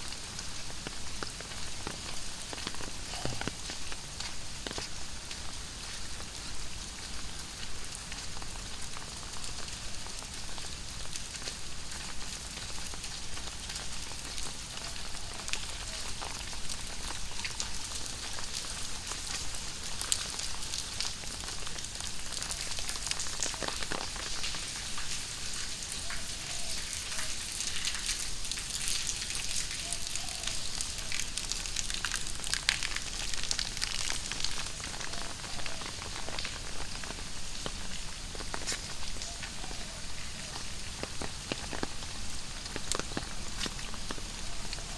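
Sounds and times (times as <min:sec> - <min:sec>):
heavy rain falling: 0:00.0 - 0:44.9.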